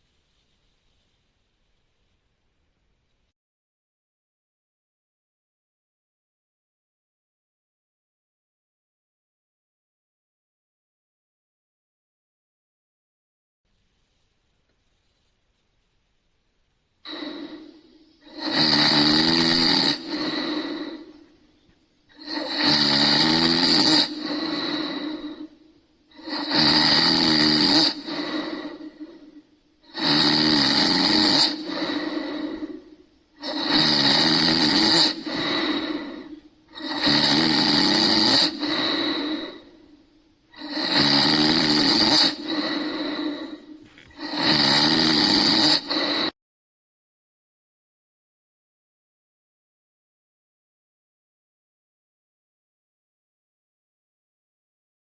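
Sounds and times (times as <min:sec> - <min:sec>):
person snoring: 0:17.0 - 0:46.4.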